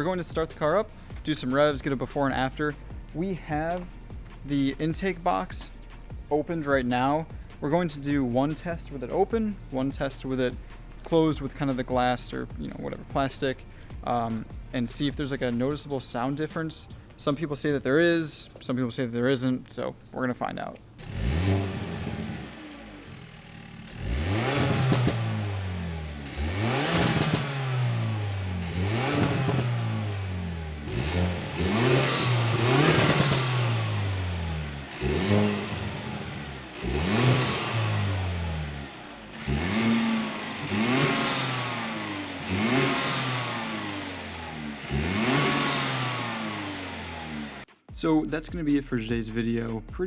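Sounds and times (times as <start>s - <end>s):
car engine revving: 21.0s - 47.7s.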